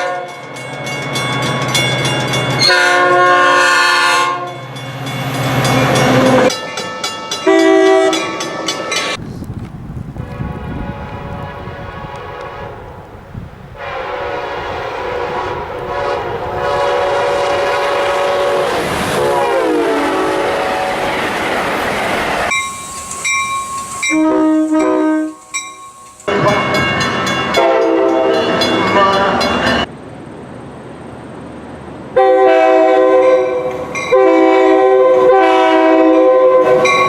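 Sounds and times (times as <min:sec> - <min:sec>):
train air horn: 0:00.0 - 0:00.3, 0:02.6 - 0:04.6, 0:07.4 - 0:08.2, 0:10.2 - 0:12.9, 0:13.8 - 0:21.2, 0:24.0 - 0:25.5, 0:27.6 - 0:29.4, 0:32.2 - 0:37.0
rush of passing train: 0:00.0 - 0:37.0.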